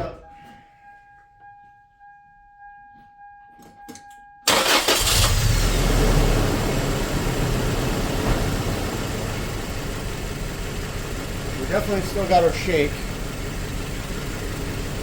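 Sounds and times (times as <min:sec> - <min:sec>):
car engine cranking and running: 0:04.5 - 0:15.0.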